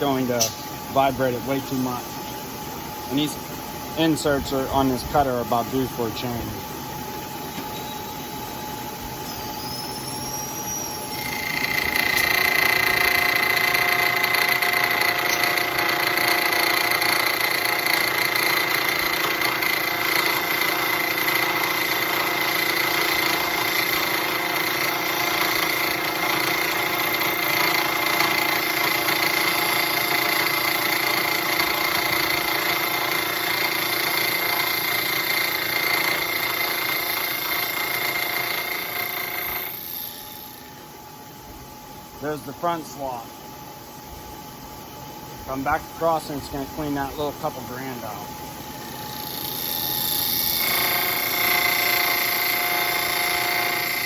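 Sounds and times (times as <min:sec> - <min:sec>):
milling machine spindle running: 0:09.8 - 0:40.6, 0:49.0 - 0:54.0
milling cutter cutting metal: 0:11.1 - 0:40.6, 0:49.1 - 0:54.0.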